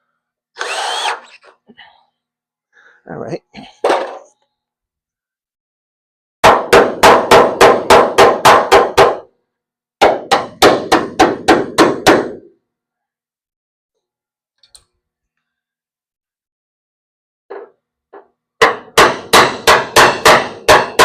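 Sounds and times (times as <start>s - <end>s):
hammer striking metal: 18.6s - 21.0s.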